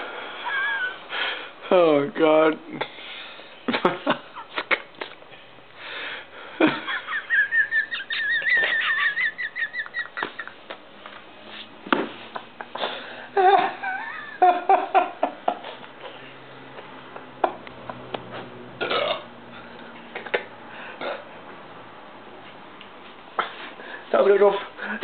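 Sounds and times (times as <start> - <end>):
high wheezy laugh: 0.1 - 1.4, 6.4 - 10.7, 12.3 - 15.9
people laughing: 0.3 - 1.0, 6.6 - 10.8, 12.3 - 15.9.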